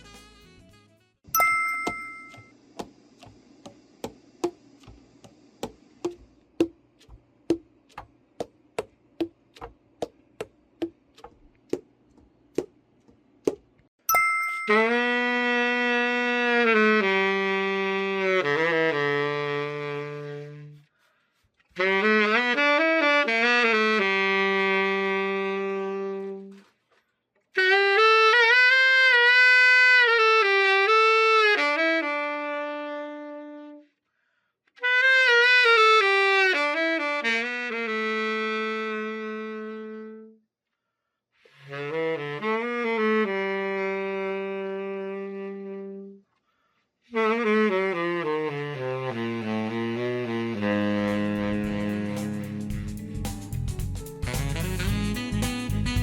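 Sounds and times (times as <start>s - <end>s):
tenor saxophone slow melody: 14.7s - 20.9s, 21.7s - 26.7s, 27.5s - 34.0s, 34.8s - 40.4s, 41.4s - 46.2s, 47.0s - 53.2s, 54.2s - 56.0s.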